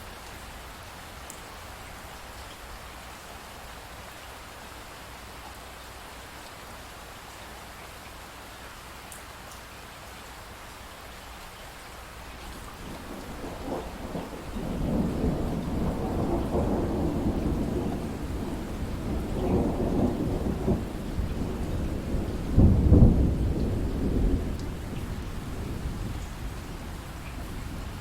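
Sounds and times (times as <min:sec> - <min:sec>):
steady rain: 0:00.0 - 0:28.0
low roll of thunder: 0:12.6 - 0:28.0.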